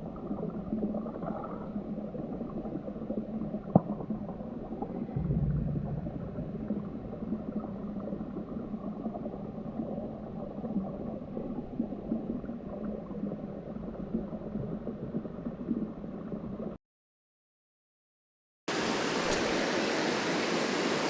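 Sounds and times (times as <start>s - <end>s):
stream water bubbling underwater: 0.0s - 16.8s.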